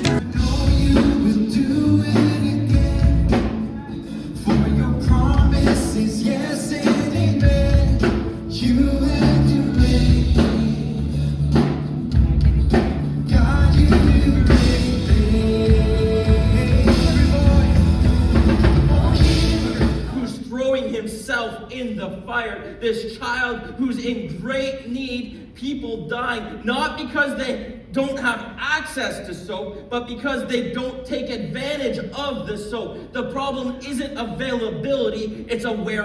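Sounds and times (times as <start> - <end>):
gospel singing: 0.0 - 12.0, 13.2 - 20.4
heavy bass: 0.0 - 20.3
drum kit: 0.0 - 20.4.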